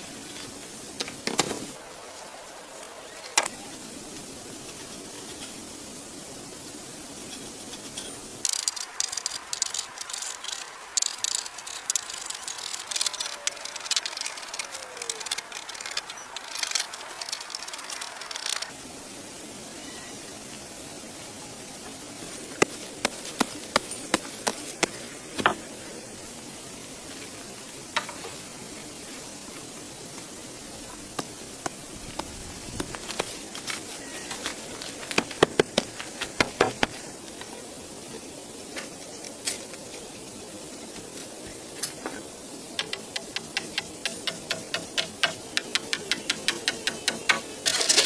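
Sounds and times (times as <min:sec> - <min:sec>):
steady hiss: 0:00.0 - 0:48.0
sharp clicks and snaps: 0:08.4 - 0:18.7.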